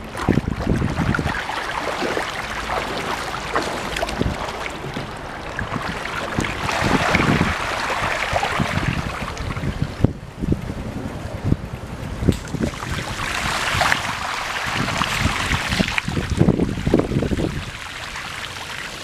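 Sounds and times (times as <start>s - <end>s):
floodwater sloshing and splashing: 0.0s - 10.2s, 12.3s - 19.0s.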